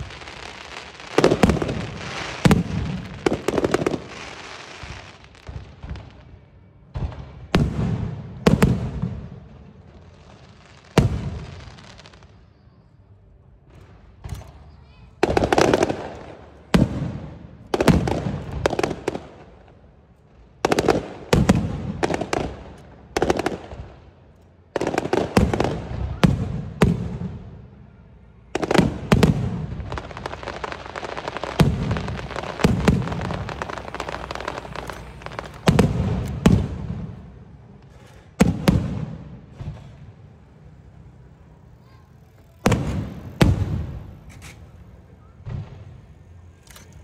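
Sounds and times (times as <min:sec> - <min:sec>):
firework crackling: 0:00.0 - 0:47.0
firework shells bursting: 0:28.7 - 0:40.2.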